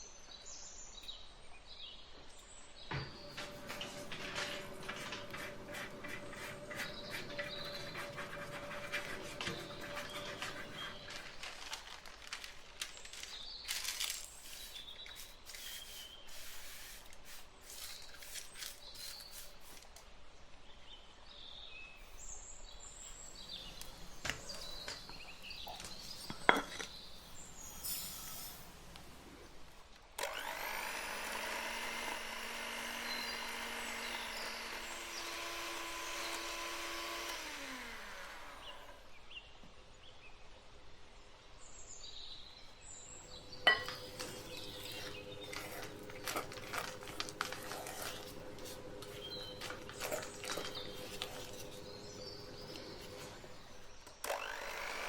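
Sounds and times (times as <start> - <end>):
utensil scraping in a bowl: 3.2 - 12.0, 13.1 - 19.9, 23.1 - 29.3, 43.3 - 53.8.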